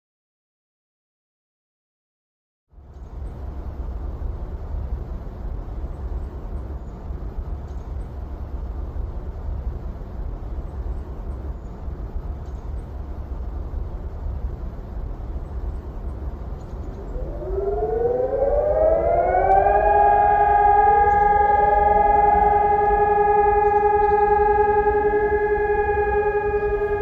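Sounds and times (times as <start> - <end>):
low wind rumble: 2.8 - 27.0
electronic sirens rising and holding: 15.3 - 27.0.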